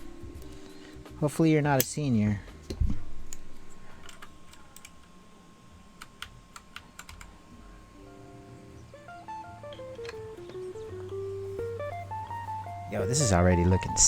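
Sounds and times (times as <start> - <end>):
keyboard keycaps clicking: 6.0 - 7.4
melody of stepped notes: 8.1 - 14.0.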